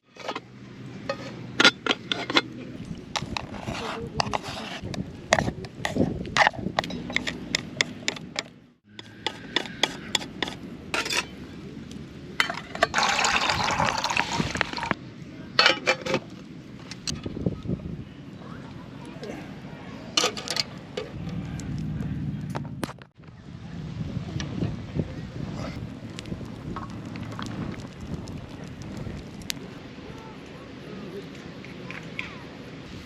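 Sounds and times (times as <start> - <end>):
liquid pouring: 12.8 - 15.0.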